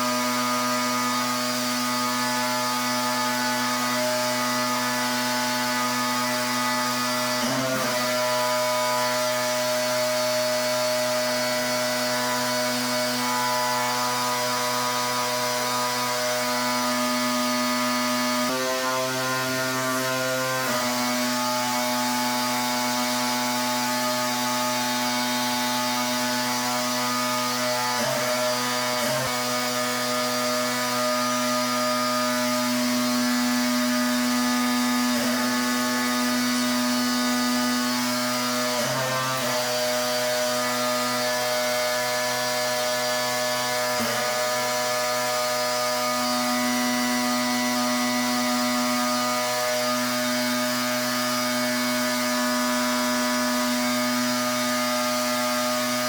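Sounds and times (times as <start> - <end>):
pressure washer drone: 0.0 - 56.0.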